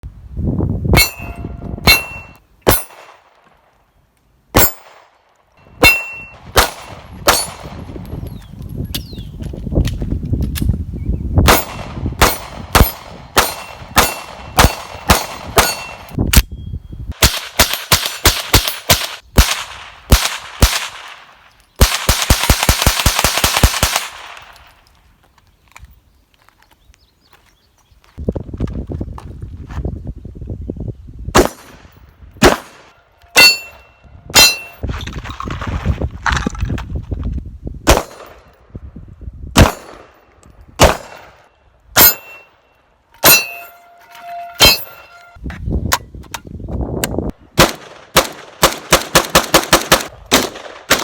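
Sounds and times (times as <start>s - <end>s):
high ringing tone: 1.0s - 2.4s, 5.6s - 6.4s, 42.0s - 45.4s
gunshots: 5.8s - 7.8s, 11.4s - 16.1s, 31.4s - 33.8s, 37.9s - 38.5s, 39.6s - 40.2s, 40.8s - 41.4s, 47.6s - 51.0s.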